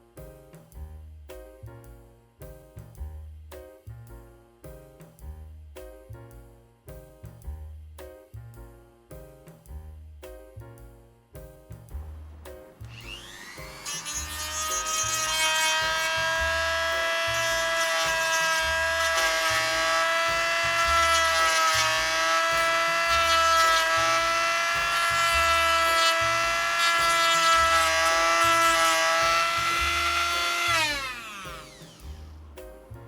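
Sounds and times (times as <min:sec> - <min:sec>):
background music with bass beat: 0:00.0 - 0:13.7, 0:21.8 - 0:33.0
rotary tool high whine: 0:12.9 - 0:32.3.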